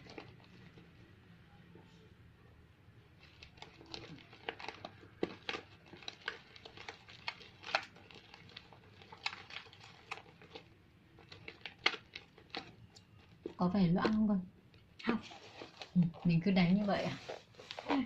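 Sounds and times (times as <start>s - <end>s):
slime squelching in a bowl: 0.0s - 1.2s, 3.1s - 18.0s.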